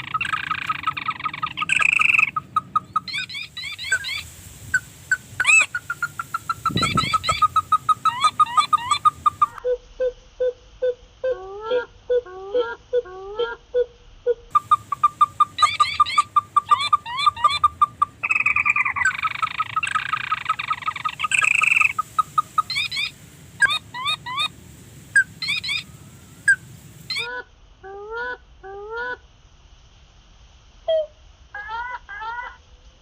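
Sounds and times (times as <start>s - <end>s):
crake calls: 0.0s - 10.6s, 14.5s - 27.4s.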